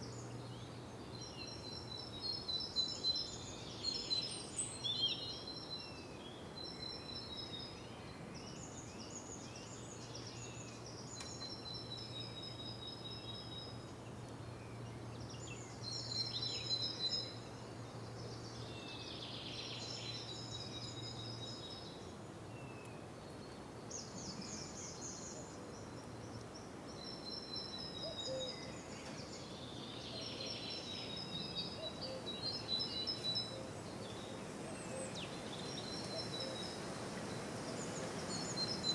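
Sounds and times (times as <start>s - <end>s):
songbirds trilling: 0.0s - 38.9s
steady background hiss: 0.0s - 38.9s.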